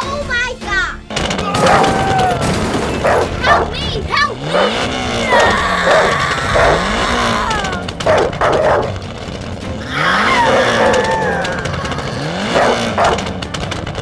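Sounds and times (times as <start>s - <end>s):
background music: 0.0s - 14.0s
dog barking: 8.1s - 8.9s.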